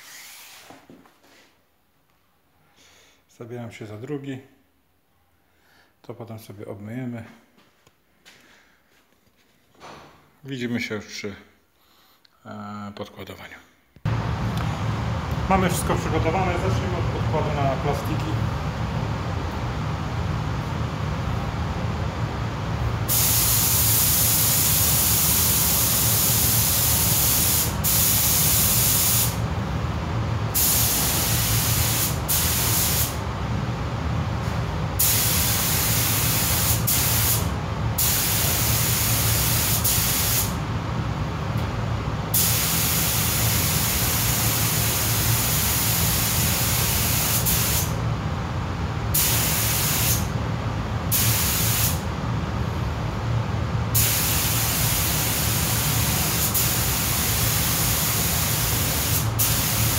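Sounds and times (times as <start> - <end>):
steady low hum: 14.0 - 59.9
spray gun hissing: 23.1 - 29.4, 30.6 - 33.2, 35.0 - 40.6, 42.4 - 48.0, 49.2 - 50.3, 51.1 - 52.0, 54.0 - 59.9.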